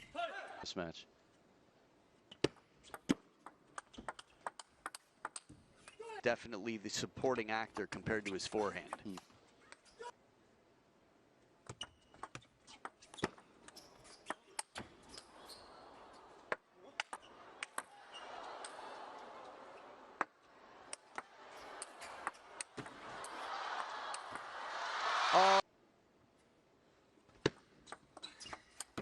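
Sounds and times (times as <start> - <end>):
table tennis ball clicking: 2.9 - 5.5
crowd noise: 15.0 - 25.6.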